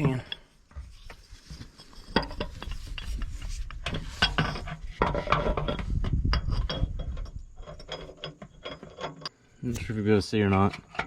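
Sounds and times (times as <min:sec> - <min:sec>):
metal parts clinking and scraping: 0:01.5 - 0:09.4.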